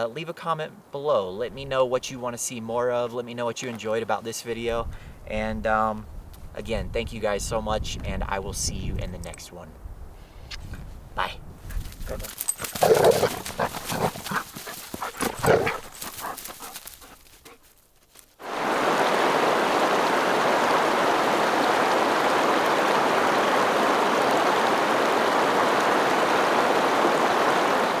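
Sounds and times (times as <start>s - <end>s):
clicks and rustles: 11.7s - 18.4s
running water rushing: 12.0s - 17.2s, 18.4s - 28.0s.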